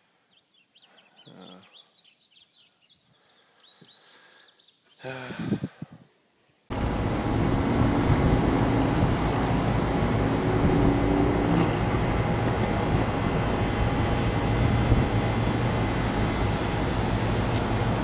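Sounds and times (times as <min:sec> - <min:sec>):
high insect drone: 0:00.0 - 0:18.0
small birds chirping: 0:00.2 - 0:05.2
low voice humming: 0:01.3 - 0:01.7, 0:05.0 - 0:06.0, 0:07.1 - 0:13.2
loud steady rushing noise: 0:06.7 - 0:18.0
low hum: 0:06.7 - 0:18.0.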